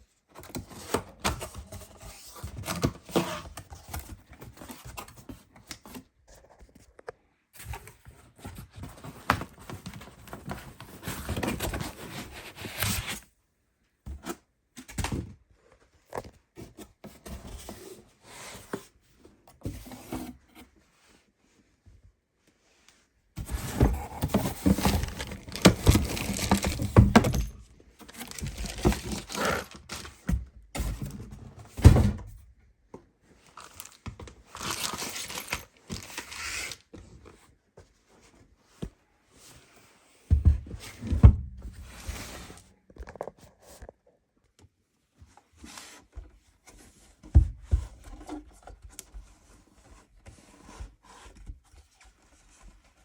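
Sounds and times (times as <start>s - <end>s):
packaging rustling and tearing: 23.4s - 30.2s, 33.6s - 36.8s.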